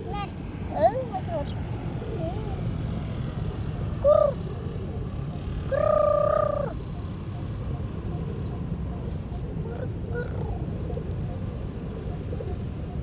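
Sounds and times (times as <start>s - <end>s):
pigeon cooing: 3.9s - 6.8s, 7.7s - 13.0s.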